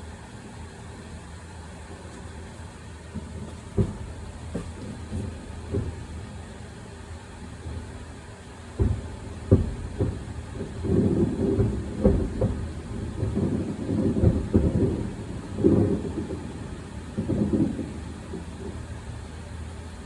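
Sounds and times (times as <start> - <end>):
fireworks booming and crackling: 3.1 - 19.7.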